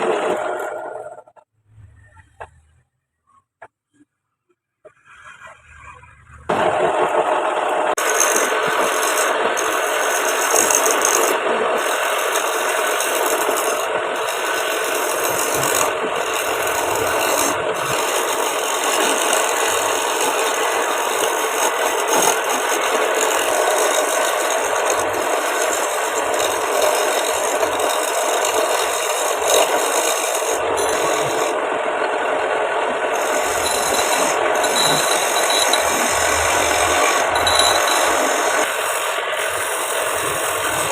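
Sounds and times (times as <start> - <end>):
wood lathe tool rasping: 7.9 - 31.7, 32.8 - 40.9.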